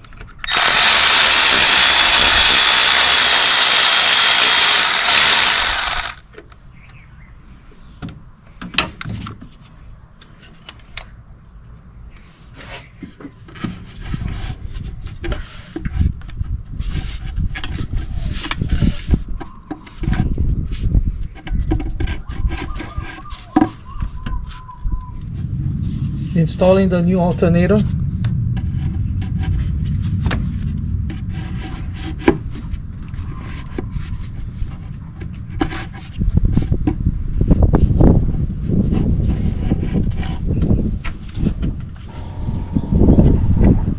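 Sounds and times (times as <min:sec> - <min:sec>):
metal parts rubbing and knocking: 0:00.5 - 0:06.2
steady low rumble: 0:25.2 - 0:33.2, 0:42.0 - 0:43.9.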